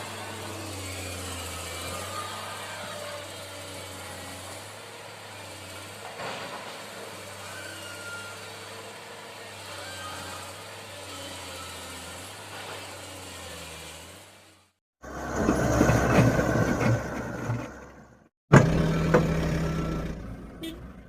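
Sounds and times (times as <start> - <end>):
heavy diesel engine running: 15.0 - 21.0.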